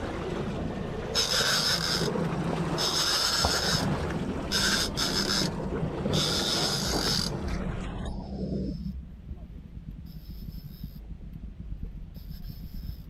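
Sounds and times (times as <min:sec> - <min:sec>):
outboard engines idling: 0:00.0 - 0:13.0
fishing reel whirring: 0:01.1 - 0:02.2, 0:02.8 - 0:07.4, 0:10.0 - 0:11.0, 0:12.2 - 0:13.0.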